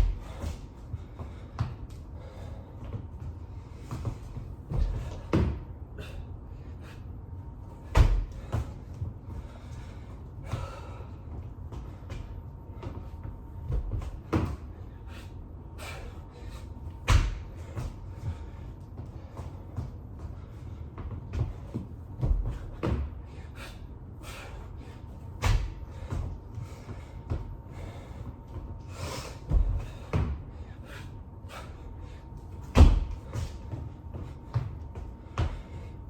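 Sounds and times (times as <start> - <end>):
thuds of body landing on floor: 3.8 - 5.7, 7.8 - 9.1, 11.7 - 14.7, 17.0 - 18.5, 21.0 - 23.2, 25.4 - 27.5, 29.5 - 30.4, 32.6 - 35.8.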